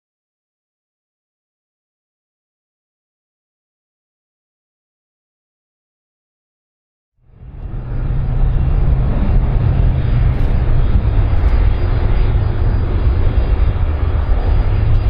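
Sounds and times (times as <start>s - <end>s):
airplane engine rumble: 7.2s - 15.0s.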